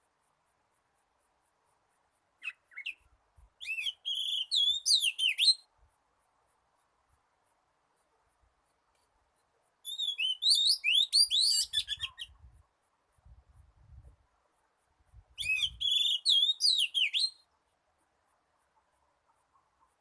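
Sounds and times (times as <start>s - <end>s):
magpie-robin whistled song: 2.4s - 5.7s, 9.8s - 12.4s, 15.4s - 17.5s.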